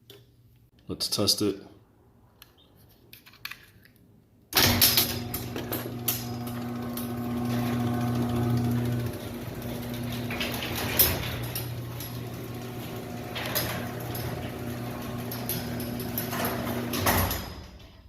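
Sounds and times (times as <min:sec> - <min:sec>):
garage door motor humming: 0:04.6 - 0:18.0.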